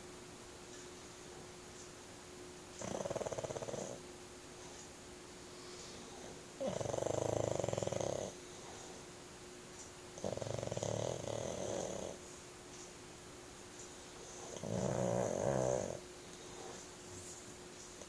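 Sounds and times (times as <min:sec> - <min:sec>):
dog snoring loudly: 0:02.8 - 0:04.0, 0:06.6 - 0:08.4, 0:10.2 - 0:12.2, 0:14.4 - 0:16.0.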